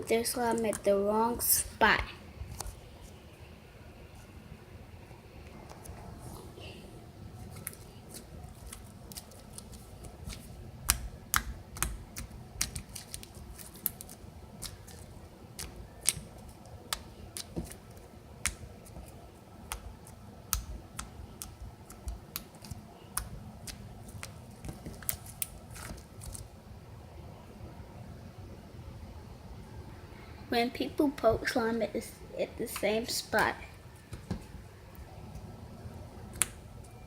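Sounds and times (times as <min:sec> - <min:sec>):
slime squished by hand clicking: 0:15.6 - 0:16.3.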